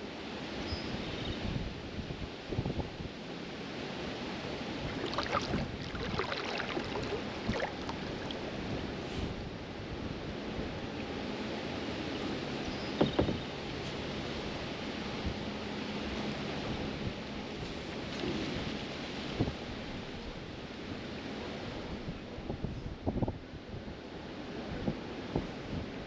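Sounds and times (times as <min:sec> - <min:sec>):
wind and rushing water: 0:00.1 - 0:26.0
paddle splashing in water: 0:04.8 - 0:09.1.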